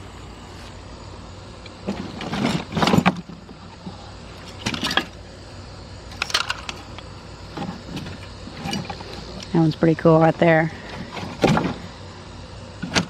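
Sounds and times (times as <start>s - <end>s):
metal parts rattling: 4.4s - 5.2s, 6.1s - 6.8s, 7.6s - 9.4s.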